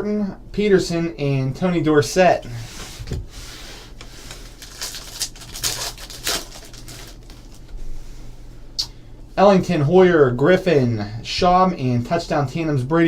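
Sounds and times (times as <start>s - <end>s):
steady low hum: 0.0s - 13.0s
trading cards rustling and clicking: 4.0s - 7.7s.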